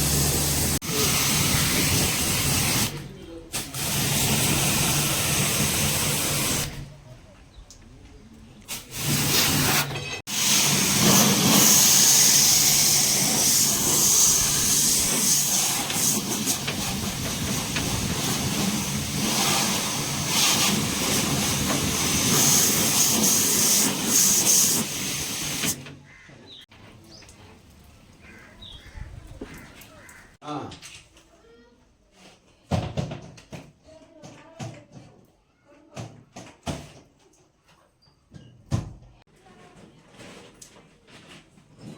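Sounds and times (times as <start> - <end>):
water jet spraying hiss: 0.0 - 6.8, 8.7 - 25.8.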